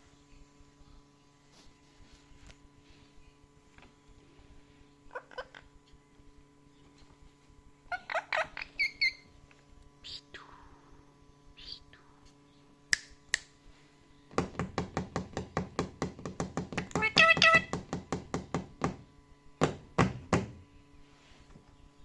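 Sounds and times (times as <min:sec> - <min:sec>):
fast knocks: 0:14.3 - 0:19.0, 0:19.6 - 0:20.6.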